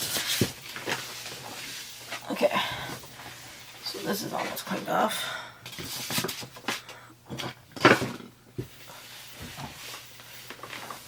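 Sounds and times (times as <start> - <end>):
rustling: 8.8 - 11.0.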